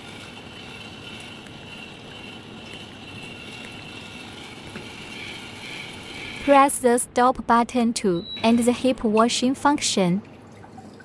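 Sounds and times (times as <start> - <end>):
bidet water spray hissing: 0.0 - 6.5.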